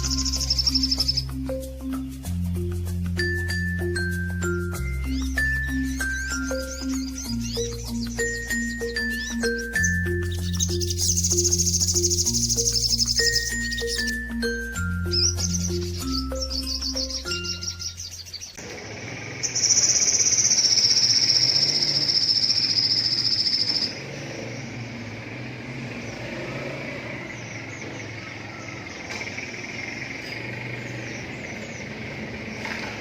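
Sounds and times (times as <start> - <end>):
insects buzzing: 5.3 - 14.2, 18.6 - 27.7
loud high insect trill: 6.0 - 14.2, 18.6 - 25.0.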